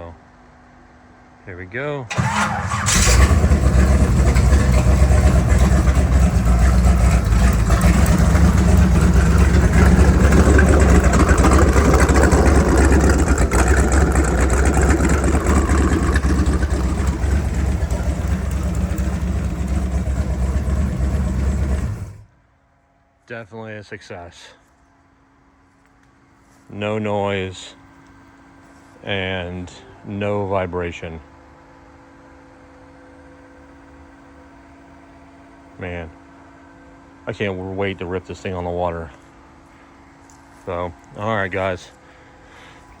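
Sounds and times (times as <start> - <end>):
boat engine idling: 2.1 - 22.3.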